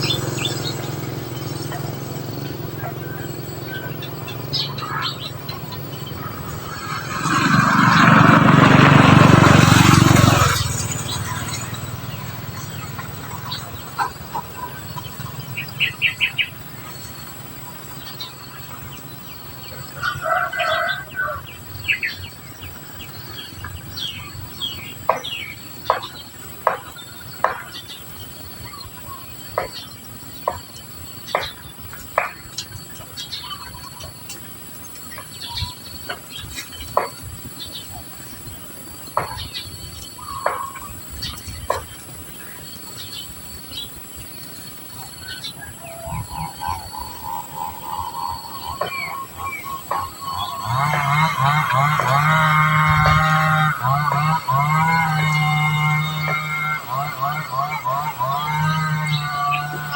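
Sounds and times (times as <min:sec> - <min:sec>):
loud noisy sound: 0:00.0 - 0:14.1
finches chirping: 0:21.7 - 0:52.4.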